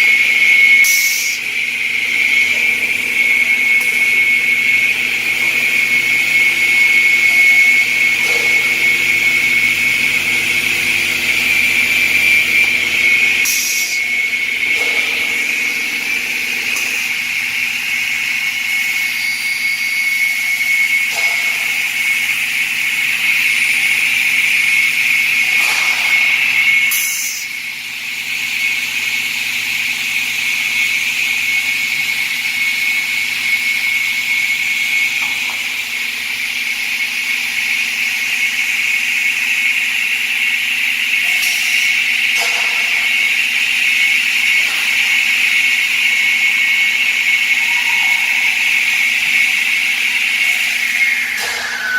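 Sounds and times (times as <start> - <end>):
cutting machine motor whining: 0.0 - 25.6.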